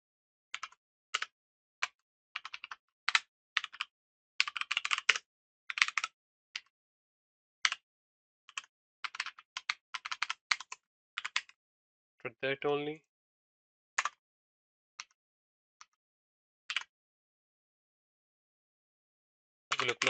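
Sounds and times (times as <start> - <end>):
typing on computer keyboard: 0.6 - 6.7, 7.6 - 7.8, 8.5 - 11.6, 19.7 - 20.0.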